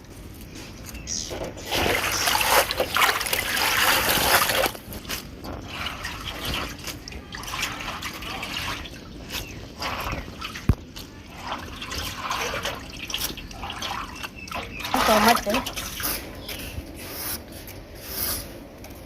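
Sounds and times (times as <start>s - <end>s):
water trickling and dripping: 1.2s - 16.1s
water pouring: 1.3s - 16.3s.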